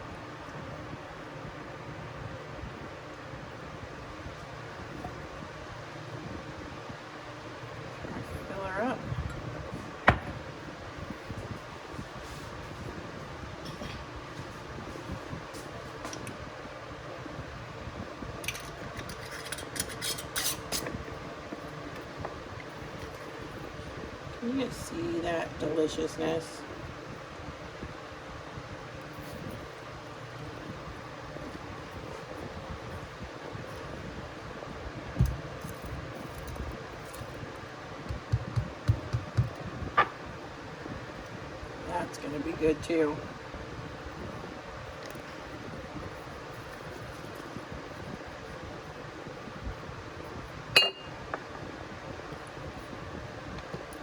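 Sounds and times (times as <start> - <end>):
steady fan hum: 0.0 - 54.0
glass jar lid clicks and clinks: 50.8 - 51.1.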